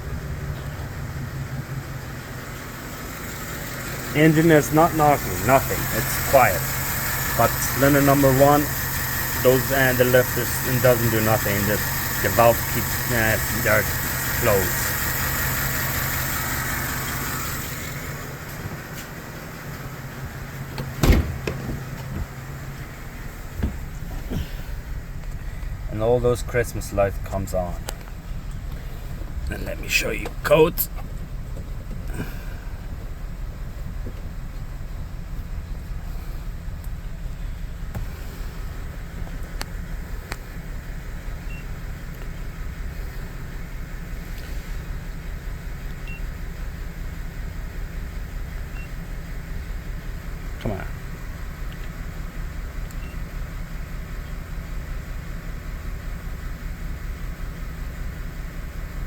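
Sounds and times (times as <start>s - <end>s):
engine idling with misfire: 0.0s - 59.0s
loud thump: 20.8s - 22.3s, 23.6s - 24.3s.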